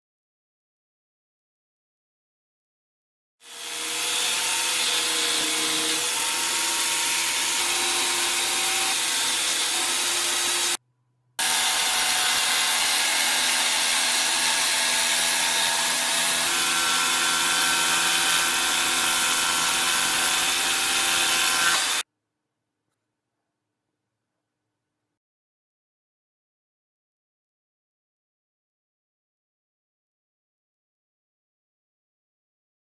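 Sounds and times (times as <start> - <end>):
jigsaw sawing through wood: 3.4 - 10.8, 11.4 - 22.0.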